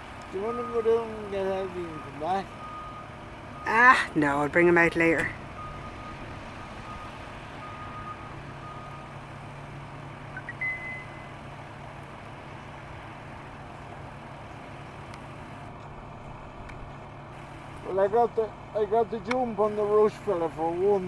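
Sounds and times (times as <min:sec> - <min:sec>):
farm machinery drone: 0:00.0 - 0:21.0
short electronic beeps: 0:10.3 - 0:11.4
higher beep: 0:10.4 - 0:11.4.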